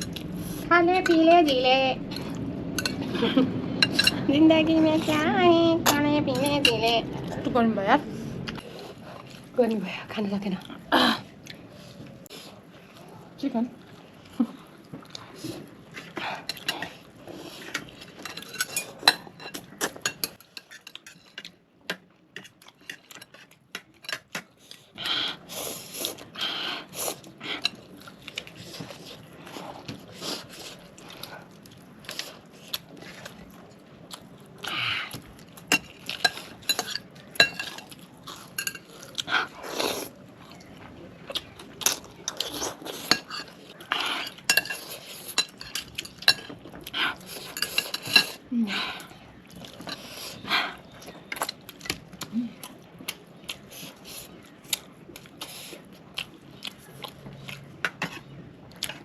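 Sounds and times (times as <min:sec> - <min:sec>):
person chewing food: 0:10.7 - 0:59.0
cutlery clinking against dishes: 0:18.2 - 0:24.5, 0:35.7 - 0:38.9, 0:43.0 - 0:43.6, 0:44.2 - 0:46.8, 0:47.4 - 0:48.4.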